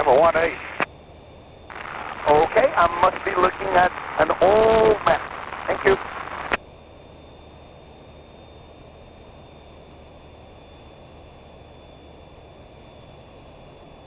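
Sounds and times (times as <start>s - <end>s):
propeller plane engine drone: 0.0s - 14.0s.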